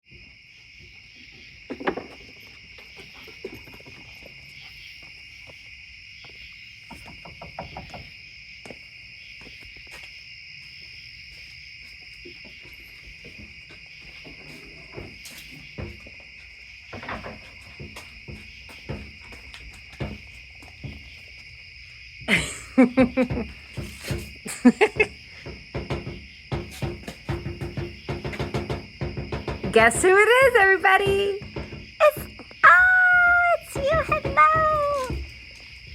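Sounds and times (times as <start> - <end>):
insects chirring: 0.1 - 35.9
dog thumping: 12.4 - 21.6, 22.3 - 35.9.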